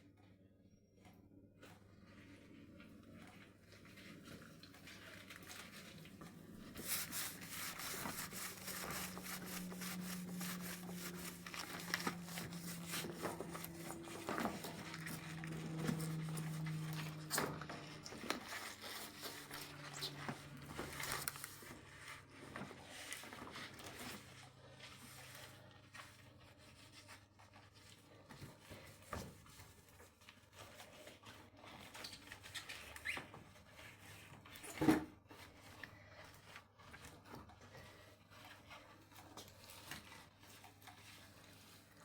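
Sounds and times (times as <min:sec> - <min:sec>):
crinkling and scraping: 0:01.6 - 0:42.0
low steady hum: 0:06.6 - 0:21.8.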